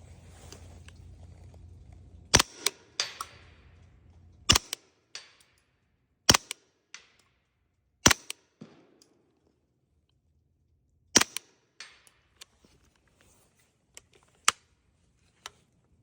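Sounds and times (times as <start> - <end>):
metallic clicks and clatter: 1.9 - 5.7.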